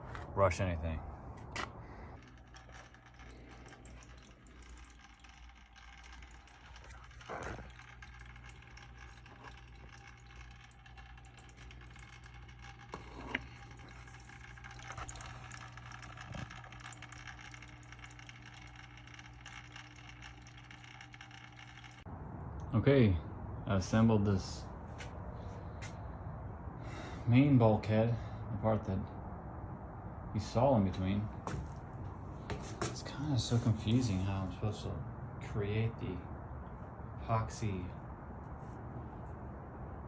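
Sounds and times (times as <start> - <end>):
low hum: 0.0 - 26.8.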